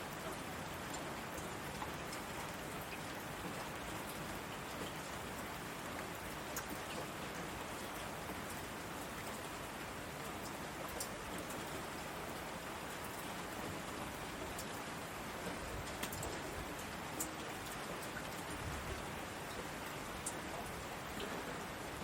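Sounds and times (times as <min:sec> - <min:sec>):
heavy rain on asphalt: 0:00.0 - 0:22.0.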